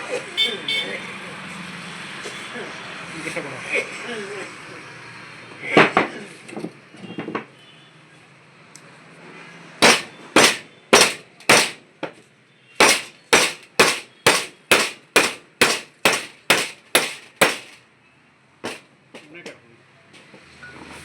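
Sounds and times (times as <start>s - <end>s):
hammer blows on metal: 9.8s - 11.8s, 12.8s - 17.8s.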